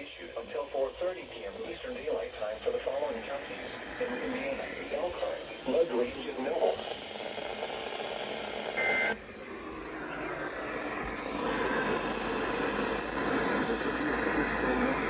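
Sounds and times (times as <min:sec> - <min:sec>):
steady hiss and hum: 0:00.0 - 0:15.0
two-tone digital data burst: 0:08.7 - 0:09.2.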